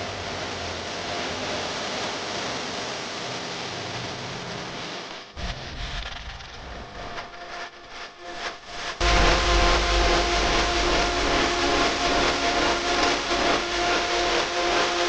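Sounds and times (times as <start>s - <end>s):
machine rumble and hiss: 0.0s - 15.0s
machine humming tones: 5.3s - 15.0s.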